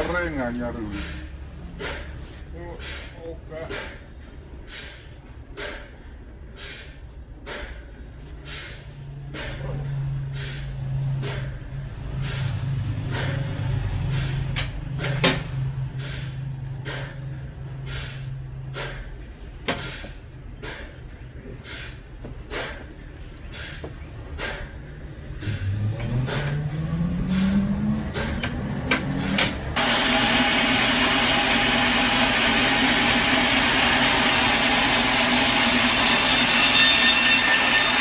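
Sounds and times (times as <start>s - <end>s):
low engine hum: 7.2s - 29.9s.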